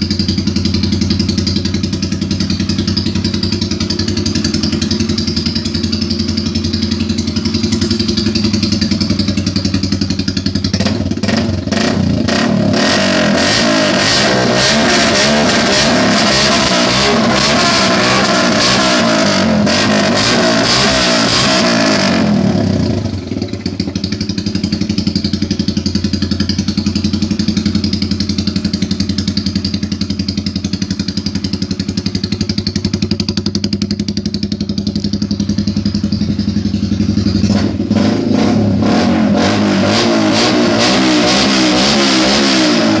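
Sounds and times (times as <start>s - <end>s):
motorcycle engine revving and idling: 0.0s - 43.0s.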